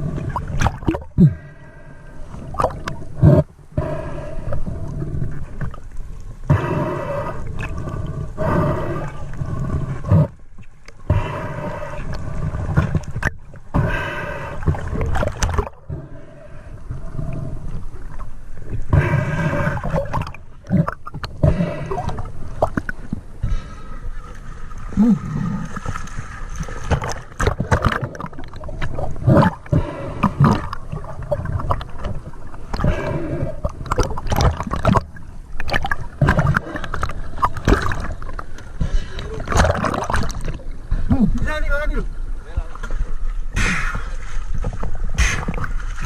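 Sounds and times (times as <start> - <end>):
water gurgling and sloshing: 0.0 - 46.0.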